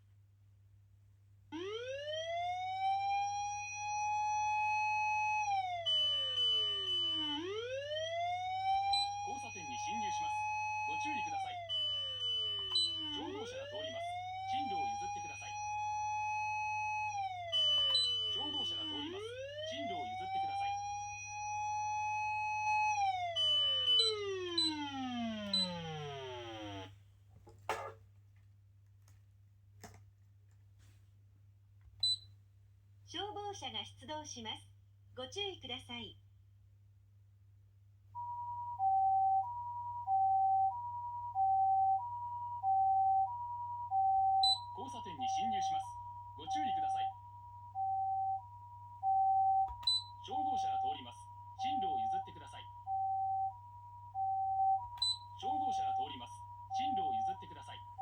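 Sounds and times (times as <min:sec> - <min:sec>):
electronic siren wail: 0:01.5 - 0:27.0, 0:38.2 - 0:58.0
steady high-pitched tone: 0:08.5 - 0:26.9, 0:38.7 - 0:58.0.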